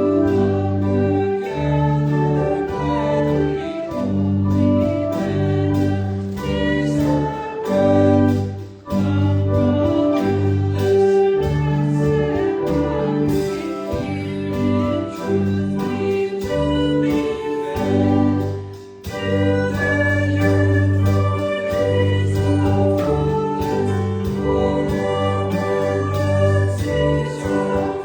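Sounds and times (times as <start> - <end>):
church organ playing a hymn: 0.0 - 28.0.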